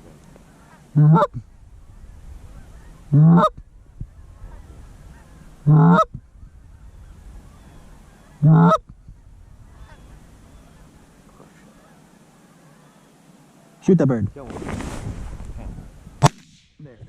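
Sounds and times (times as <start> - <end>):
goose honks: 0.7 - 1.4, 2.6 - 3.6, 4.4 - 6.2, 7.7 - 8.9.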